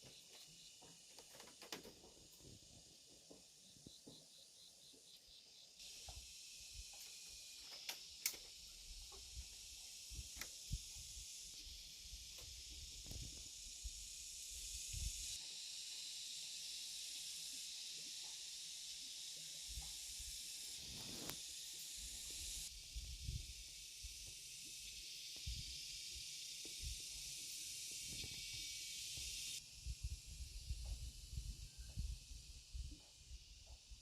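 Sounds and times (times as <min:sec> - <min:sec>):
high-pitched outdoor hiss: 0:00.0 - 0:34.0
rustles: 0:20.8 - 0:21.4.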